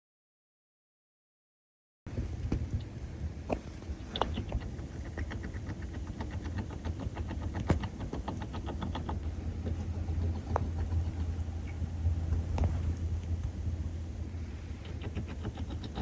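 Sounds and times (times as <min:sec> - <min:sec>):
rapid fine clicks: 0:03.9 - 0:13.6, 0:14.7 - 0:16.0
low rumble: 0:09.1 - 0:16.0.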